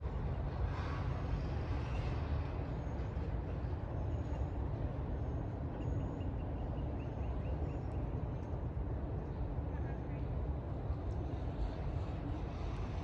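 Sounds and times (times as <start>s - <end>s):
gondola ride rumble with hiss: 0.0s - 13.0s.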